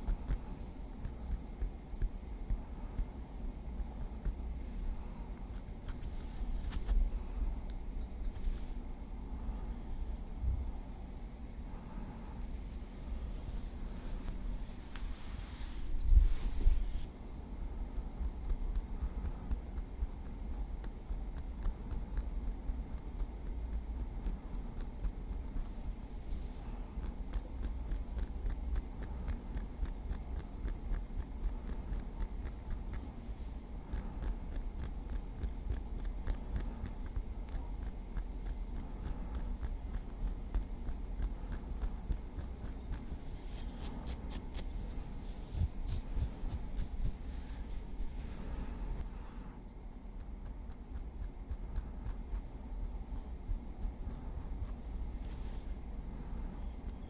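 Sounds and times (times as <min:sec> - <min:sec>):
low steady hum: 0:00.0 - 0:57.0.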